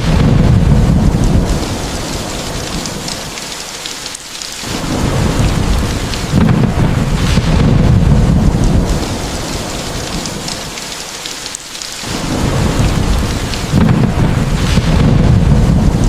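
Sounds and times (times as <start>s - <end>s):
low thunder rumble: 0.0s - 3.4s, 4.6s - 10.8s, 12.0s - 16.0s
heavy rain hissing: 0.0s - 16.0s
raindrop ticks: 0.0s - 16.0s.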